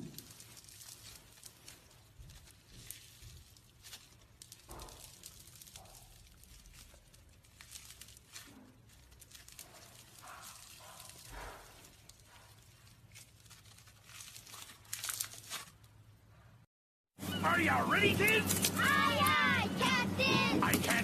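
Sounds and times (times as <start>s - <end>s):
soft material crushed by hand: 0.0s - 16.0s.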